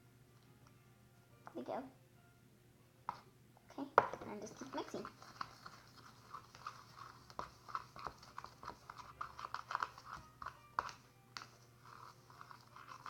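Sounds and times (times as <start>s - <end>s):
sticky dough squelching in bowl: 4.1s - 13.0s.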